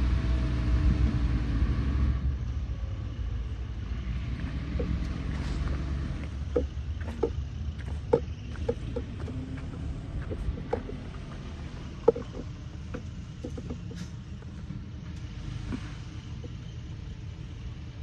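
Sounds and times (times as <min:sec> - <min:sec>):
model bulldozer rumble: 0:00.0 - 0:18.0
small clicks and knocks: 0:05.6 - 0:14.1.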